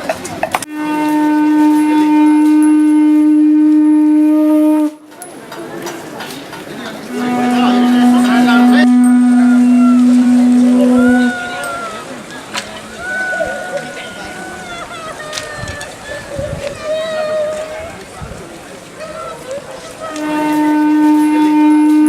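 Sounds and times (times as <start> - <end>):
conch shell blasts: 0.7 - 5.1, 7.1 - 12.2, 20.1 - 22.0.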